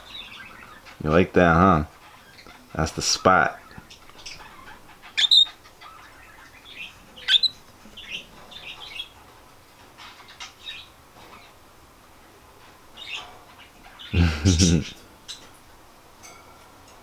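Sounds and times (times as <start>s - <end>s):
cockatiel chirping: 3.6s - 9.1s.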